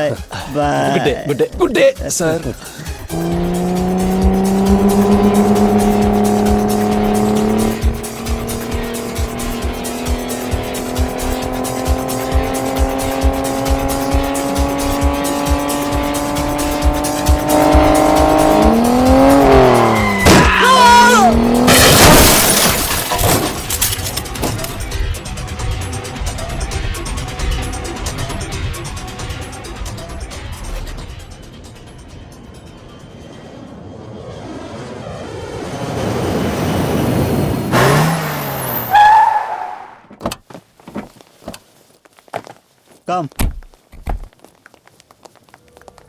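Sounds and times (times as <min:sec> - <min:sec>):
background music with steady beat: 0:00.0 - 0:20.2, 0:24.1 - 0:33.6
car engine revving: 0:02.3 - 0:29.8, 0:32.6 - 0:40.1
tyres squealing: 0:17.5 - 0:24.9, 0:37.8 - 0:46.0
loud rush of noise: 0:33.0 - 0:38.2.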